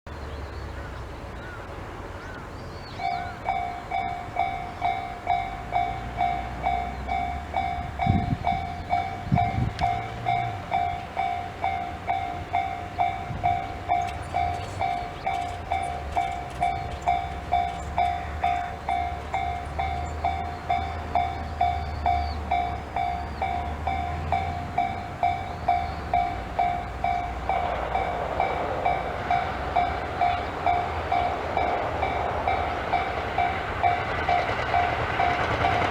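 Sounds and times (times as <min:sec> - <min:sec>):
rail noise: 0:00.1 - 0:35.9
train rumbling past: 0:00.1 - 0:35.9
level crossing alarm ringing: 0:03.0 - 0:35.9.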